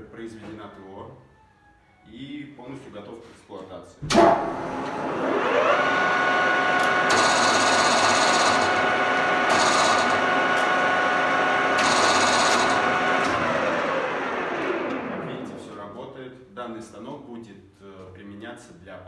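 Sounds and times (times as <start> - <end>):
lathe running with gear whine: 4.1 - 15.9.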